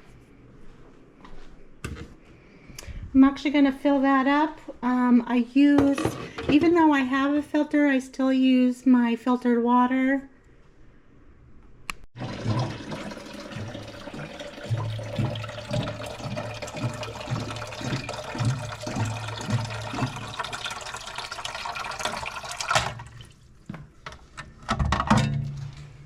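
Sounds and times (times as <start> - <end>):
water running into a tank: 12.2 - 24.2.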